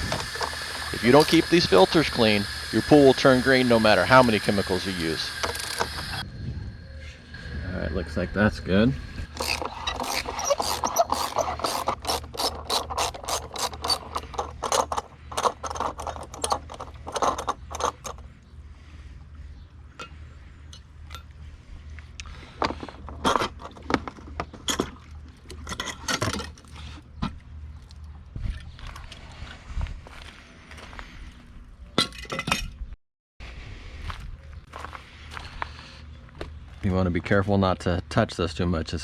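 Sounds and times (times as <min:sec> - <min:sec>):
ratcheting clicks: 0:00.0 - 0:06.2, 0:09.2 - 0:18.2
knocks and scrapes of plastic parts: 0:22.4 - 0:25.0.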